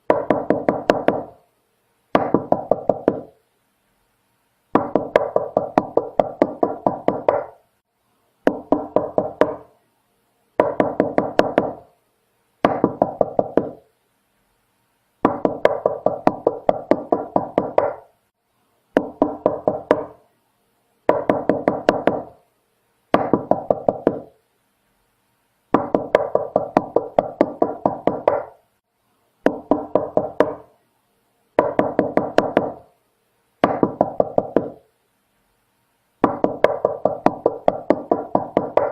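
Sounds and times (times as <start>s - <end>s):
knocking on a door: 0.1s - 1.4s, 2.2s - 3.3s, 4.8s - 7.5s, 8.5s - 9.7s, 10.6s - 11.8s, 12.6s - 13.8s, 15.2s - 18.0s, 19.0s - 20.2s, 21.1s - 22.4s, 23.1s - 24.3s, 25.8s - 28.6s, 29.4s - 30.7s, 31.6s - 32.8s, 33.6s - 34.8s, 36.2s - 38.9s.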